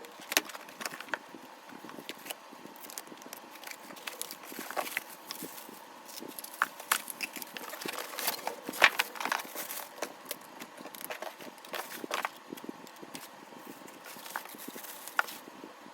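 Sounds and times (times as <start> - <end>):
packaging being unwrapped: 1.8 - 15.5.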